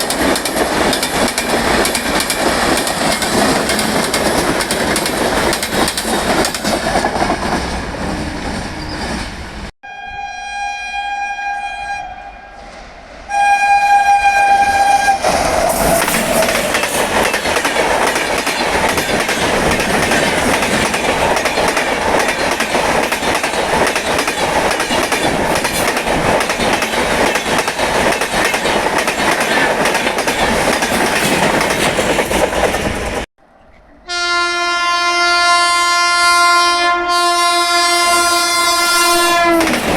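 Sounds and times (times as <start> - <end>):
passing train rumble: 0.0 - 9.7, 12.1 - 36.4, 37.1 - 39.9
locomotive twin-tone horn: 9.8 - 12.7, 13.3 - 16.5, 34.0 - 39.8.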